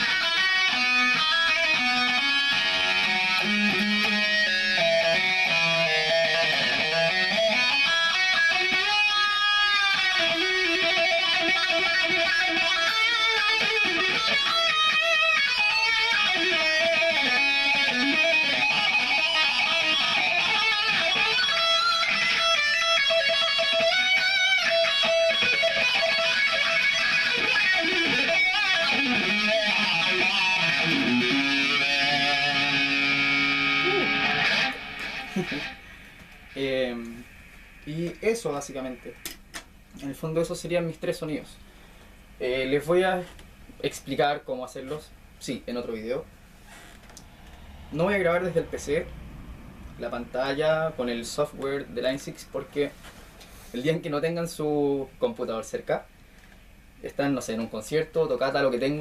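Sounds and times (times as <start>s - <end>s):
distorted electric guitar lead: 0.0s - 39.7s, 46.8s - 52.8s.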